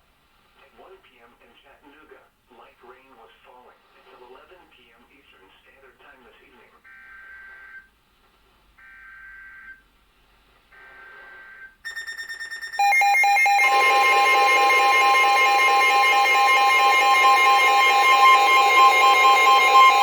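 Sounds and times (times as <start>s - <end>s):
two-tone attention signal: 11.6s - 20.0s
digital data tone bursts: 11.9s - 20.0s.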